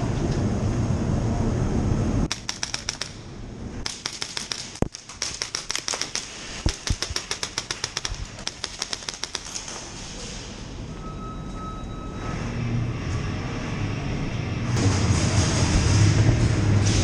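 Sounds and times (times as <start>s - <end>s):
low rumble: 11.1s - 17.0s.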